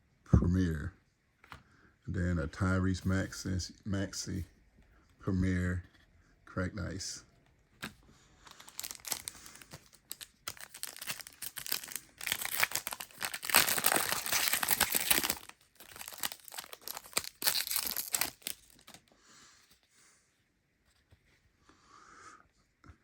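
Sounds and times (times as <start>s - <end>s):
plastic wrapper crinkling and tearing: 8.5s - 19.1s.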